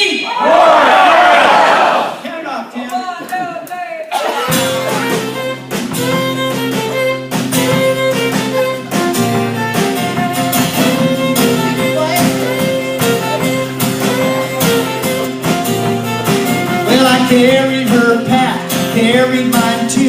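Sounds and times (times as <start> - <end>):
live band playing: 4.1 - 20.0.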